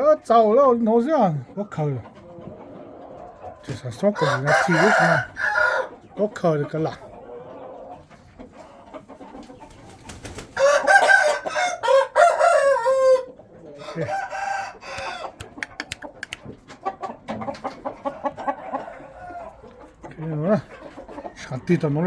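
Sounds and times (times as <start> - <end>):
clucking calls: 1.2 - 22.0
rooster crowing: 4.2 - 5.9, 10.6 - 15.4
sharp clicks: 15.0 - 16.5.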